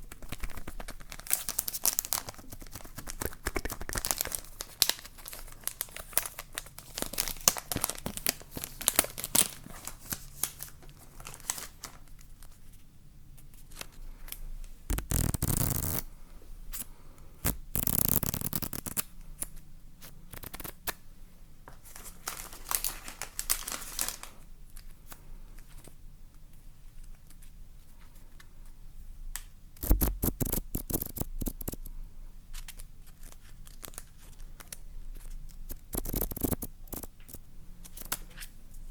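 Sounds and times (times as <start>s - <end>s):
crinkling and rustling materials: 0.0s - 16.1s, 21.6s - 28.8s, 32.5s - 38.9s.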